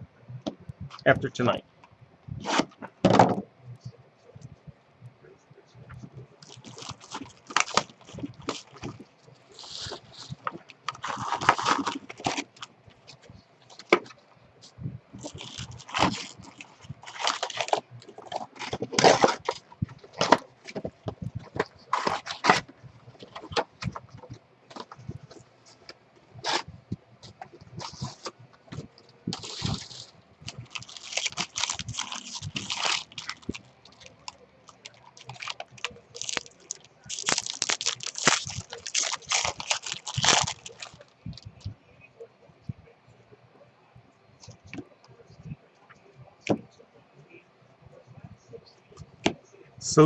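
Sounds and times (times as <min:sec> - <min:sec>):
card packs tearing and crinkling: 0:06.4 - 0:12.7, 0:15.2 - 0:24.0, 0:27.8 - 0:41.1.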